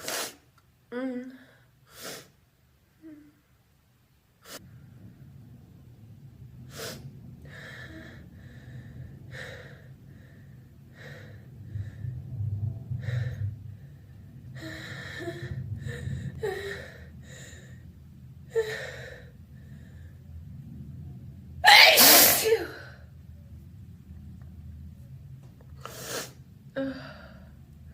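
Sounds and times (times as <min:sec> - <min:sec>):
person sneezing loudly: 0:21.7 - 0:22.7.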